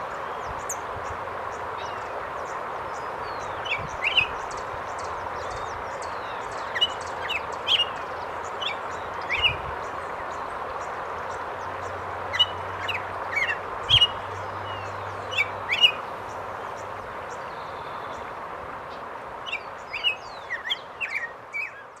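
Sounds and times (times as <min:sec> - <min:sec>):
small birds chirping: 0:00.0 - 0:22.0
waterfall and river rushing: 0:00.0 - 0:22.0.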